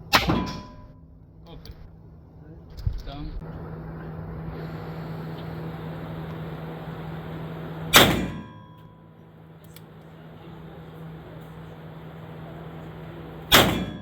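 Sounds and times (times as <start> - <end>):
steady low hum: 0.0 - 14.0
gunshot with echo: 13.5 - 14.0.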